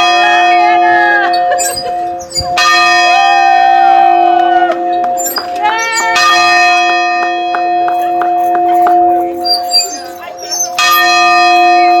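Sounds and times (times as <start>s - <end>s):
large bell ringing: 0.0s - 12.0s
people shouting: 3.0s - 6.6s.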